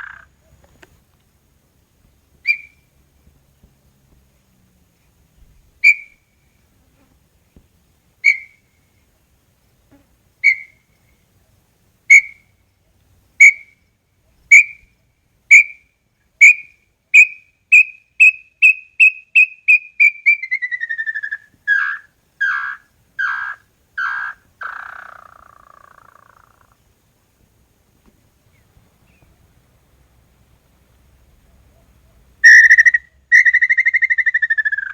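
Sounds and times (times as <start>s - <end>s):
bird whistled song: 2.4s - 2.8s, 5.8s - 6.2s, 8.2s - 8.6s, 10.4s - 10.8s, 12.1s - 12.4s, 14.5s - 14.9s, 16.4s - 26.0s, 32.4s - 34.9s.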